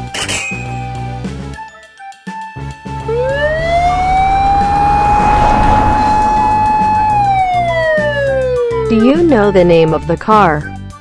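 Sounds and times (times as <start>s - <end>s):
emergency vehicle siren wail: 2.9s - 9.4s.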